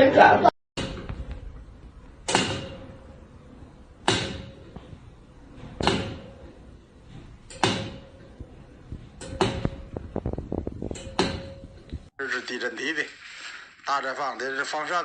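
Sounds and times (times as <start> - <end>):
sharp bangs: 0.8 - 4.9, 5.5 - 6.8, 7.4 - 8.5.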